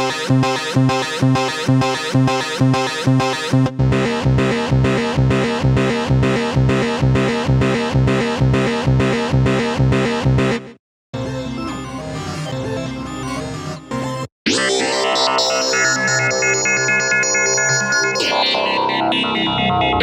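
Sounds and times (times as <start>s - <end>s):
synthesizer plucked notes: 11.2s - 20.0s.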